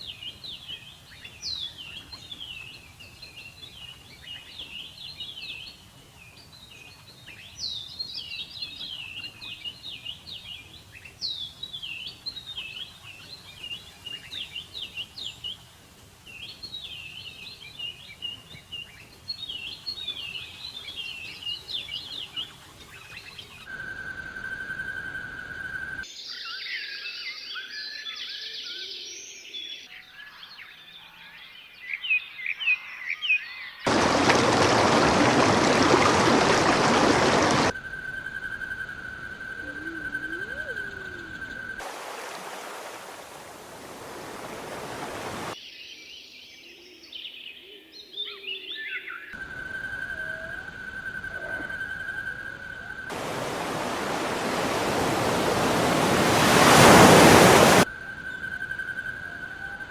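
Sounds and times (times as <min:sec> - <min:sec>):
loud even hiss: 0:53.1 - 0:57.9.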